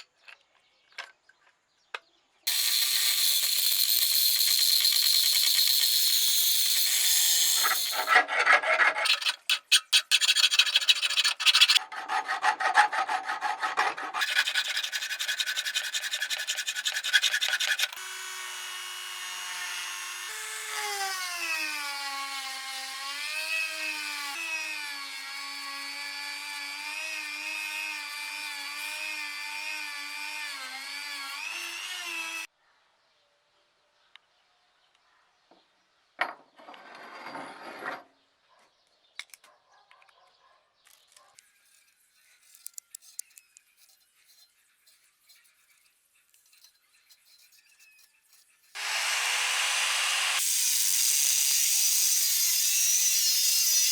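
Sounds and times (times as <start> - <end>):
power tool motor whine: 2.5 - 8.1, 17.9 - 32.5, 48.8 - 53.9
rasping filing strokes: 2.5 - 18.2, 41.7 - 53.9.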